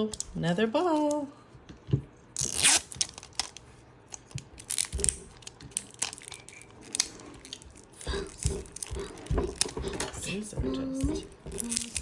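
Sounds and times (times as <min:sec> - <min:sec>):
plastic wrap ripping: 0:02.4 - 0:03.6, 0:04.6 - 0:08.0
plastic crinkling: 0:02.4 - 0:09.8.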